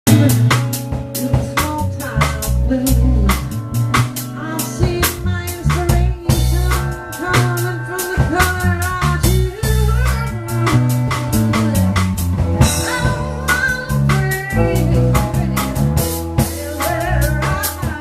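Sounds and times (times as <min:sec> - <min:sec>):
bass line: 0:00.0 - 0:18.0
blues band playing: 0:00.0 - 0:18.0
drum kit beat: 0:00.0 - 0:18.0
lead instrument bending notes: 0:00.1 - 0:18.0.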